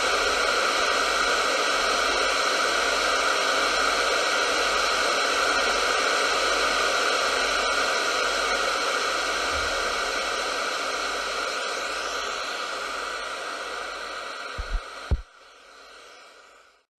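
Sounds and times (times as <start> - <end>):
radio static hiss: 0.0 - 16.9
short thump: 14.6 - 15.2.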